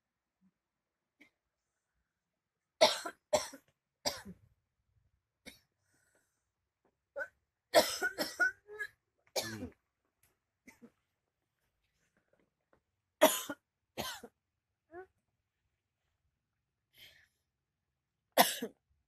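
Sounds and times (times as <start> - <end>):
person coughing: 7.8 - 8.8, 9.4 - 9.8, 13.2 - 14.3, 18.4 - 18.8.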